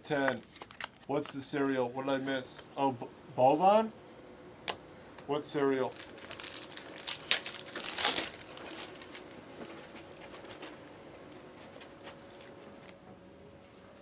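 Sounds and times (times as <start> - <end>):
wrapper crinkling: 0.1 - 1.4, 5.8 - 10.8.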